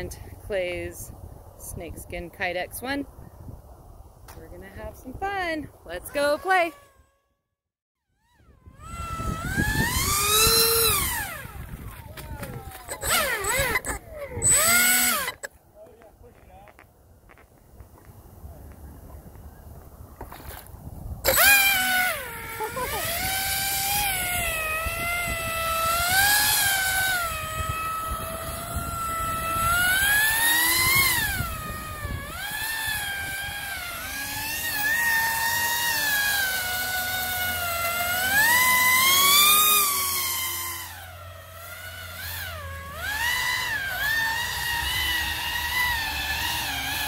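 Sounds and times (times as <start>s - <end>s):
model fan boat motor screaming: 6.0s - 7.3s, 8.0s - 15.5s, 21.2s - 47.0s.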